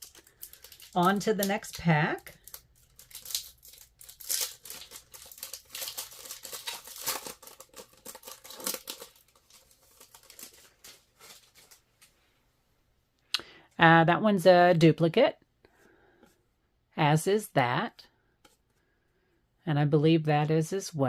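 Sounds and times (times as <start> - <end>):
wrapper tearing and crinkling: 0.0 - 11.8.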